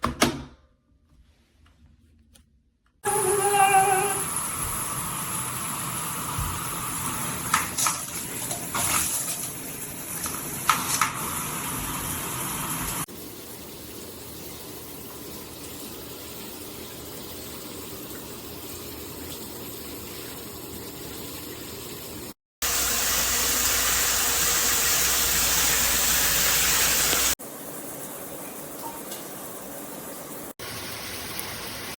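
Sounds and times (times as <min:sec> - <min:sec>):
shower head spraying water: 0:22.6 - 0:27.4.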